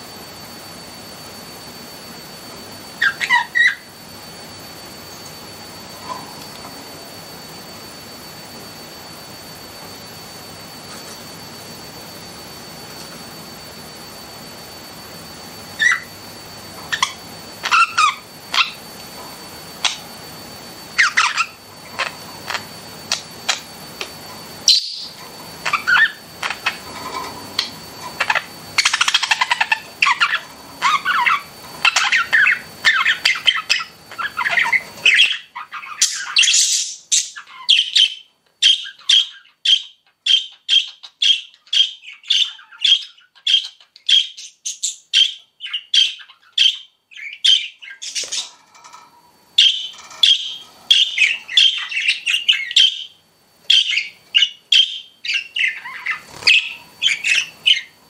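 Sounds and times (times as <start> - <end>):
budgerigars chirping and squawking: 3.0 - 3.9, 15.8 - 16.1, 16.9 - 18.8, 21.0 - 23.7, 24.7 - 49.0, 49.6 - 58.0.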